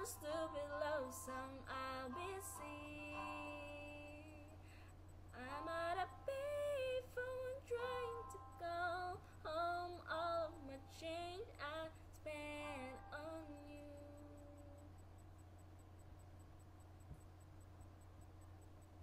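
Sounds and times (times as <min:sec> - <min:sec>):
woman singing wordless melody: 0:00.0 - 0:04.7, 0:05.3 - 0:15.0
low steady hum: 0:00.0 - 0:19.0.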